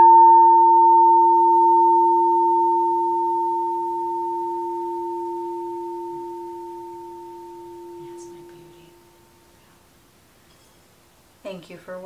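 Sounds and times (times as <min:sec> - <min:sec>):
singing bowl ringing: 0:00.0 - 0:09.4.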